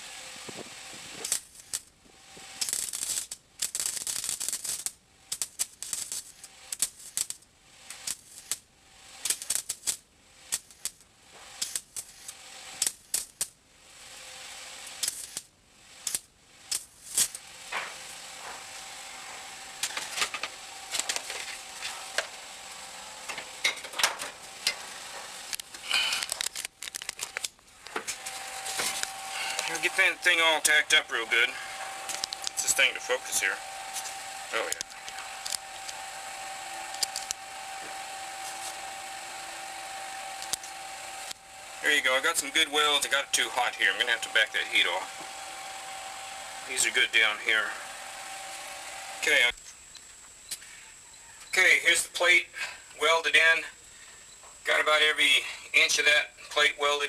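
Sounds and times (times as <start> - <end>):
welder crackling: 0.0 - 50.7.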